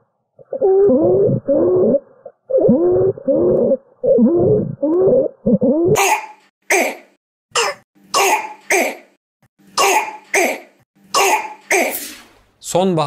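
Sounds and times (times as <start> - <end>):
child barking cough: 6.0 - 9.1, 9.8 - 12.0.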